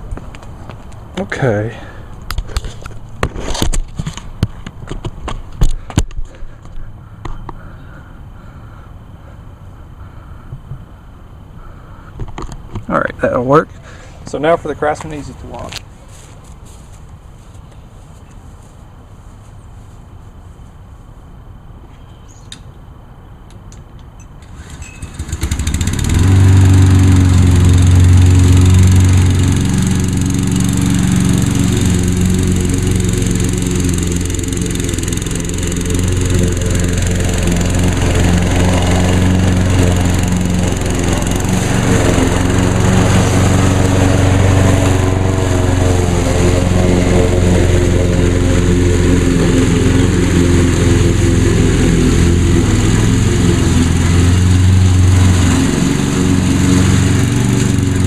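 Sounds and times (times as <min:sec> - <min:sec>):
push mower engine running: 0:24.4 - 0:58.0.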